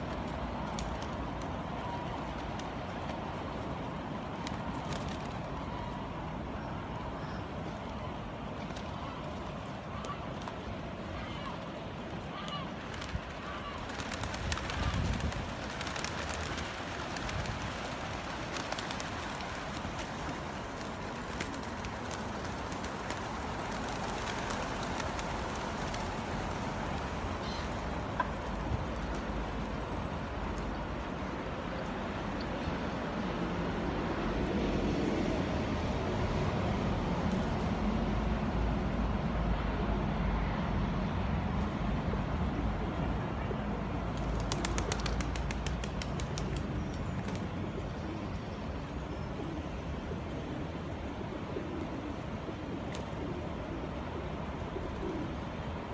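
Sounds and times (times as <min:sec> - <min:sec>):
pigeon wing flaps: 0:00.0 - 0:03.2, 0:04.4 - 0:05.6, 0:12.2 - 0:29.7, 0:44.2 - 0:47.6.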